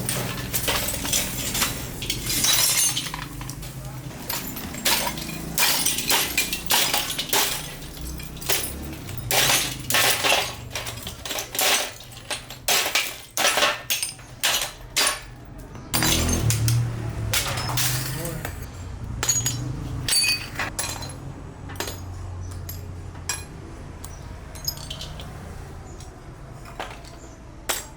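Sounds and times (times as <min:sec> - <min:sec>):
glass and casing cracking: 0:00.0 - 0:15.4, 0:16.0 - 0:18.5.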